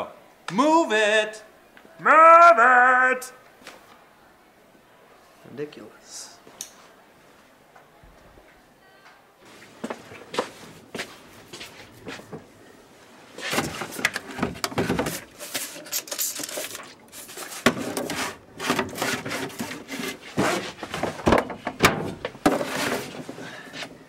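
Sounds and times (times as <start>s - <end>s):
objects knocking and scraping in closet: 13.4s - 24.0s.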